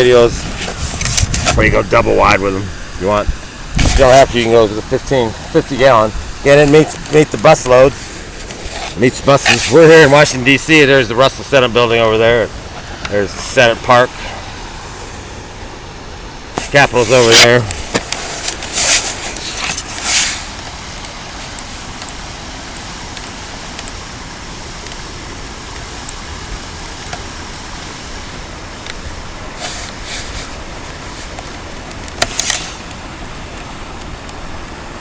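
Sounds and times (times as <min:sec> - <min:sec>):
passing road traffic: 0:02.8 - 0:23.5.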